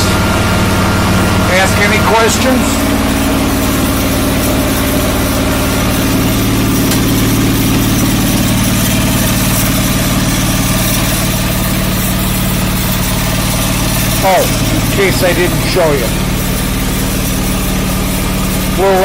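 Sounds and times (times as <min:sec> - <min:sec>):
lawn tractor engine idling: 0:00.0 - 0:19.0.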